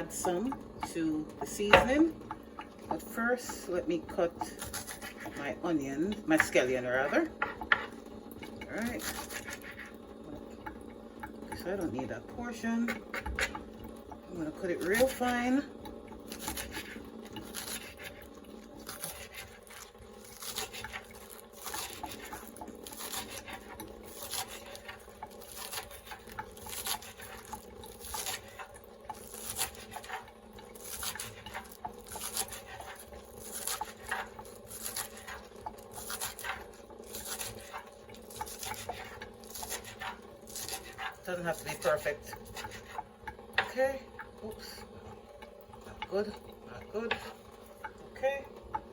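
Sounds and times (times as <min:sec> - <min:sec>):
knife chopping on cutting board: 0:01.7 - 0:02.0, 0:07.4 - 0:07.9, 0:12.8 - 0:13.6, 0:16.3 - 0:43.0.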